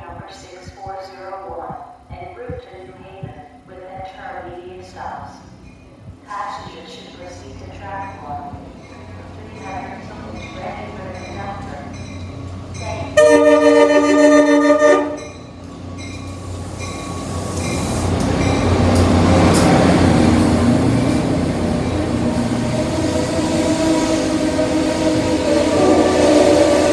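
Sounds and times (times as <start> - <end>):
train rumbling and clattering: 0.0 - 26.9
train air horn: 13.2 - 15.3, 23.4 - 26.9.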